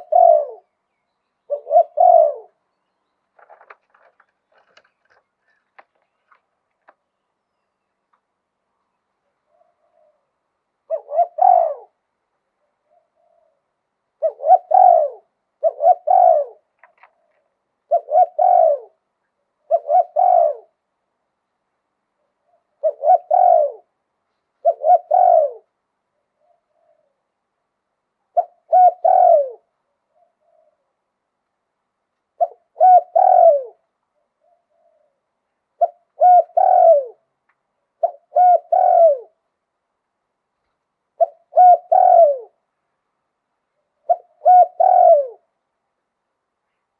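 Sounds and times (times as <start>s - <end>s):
dove cooing: 0.0s - 0.8s, 1.4s - 2.7s, 9.3s - 12.0s, 12.7s - 20.8s, 22.2s - 24.0s, 24.6s - 27.3s, 28.3s - 31.0s, 32.4s - 37.3s, 38.0s - 39.4s, 41.2s - 42.6s, 44.0s - 45.5s.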